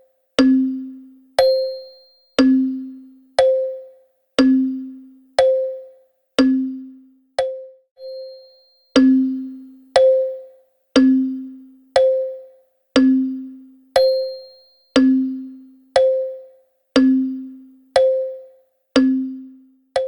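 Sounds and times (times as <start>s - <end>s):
wall clock ticking: 3.4s - 3.8s, 5.4s - 6.7s, 9.0s - 14.4s, 15.0s - 20.0s.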